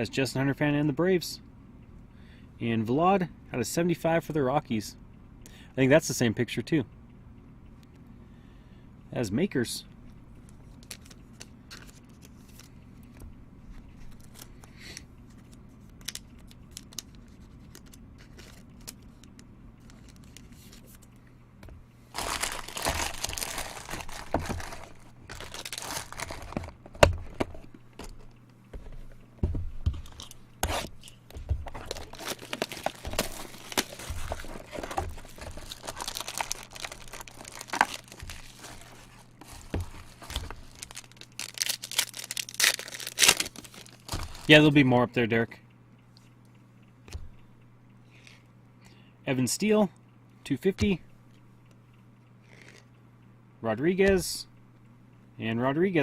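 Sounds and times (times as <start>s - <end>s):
packaging tearing and crinkling: 16.0s - 20.8s, 22.1s - 28.2s, 31.7s - 44.6s.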